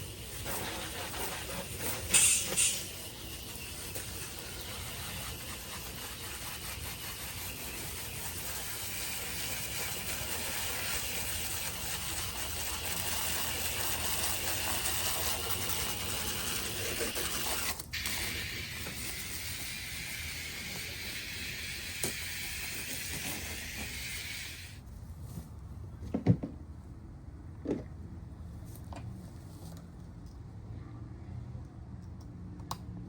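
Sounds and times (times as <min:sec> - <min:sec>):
hissing water spray: 0:00.0 - 0:24.8.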